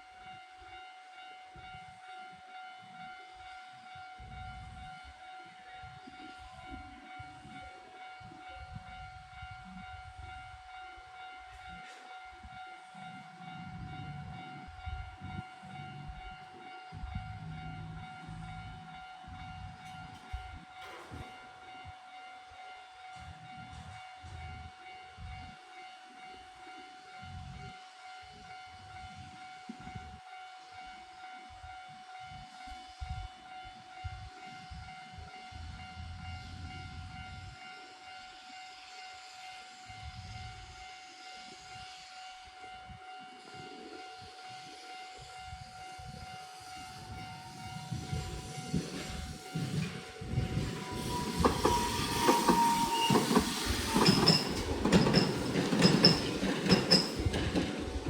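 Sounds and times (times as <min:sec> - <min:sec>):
level-crossing alarm ringing: 0:00.0 - 0:58.0
tram wheels rumbling: 0:05.8 - 0:22.0, 0:45.3 - 0:58.0.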